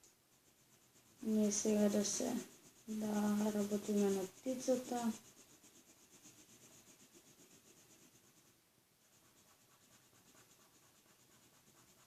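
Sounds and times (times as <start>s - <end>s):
marker rubbing on paper: 0.3s - 12.0s.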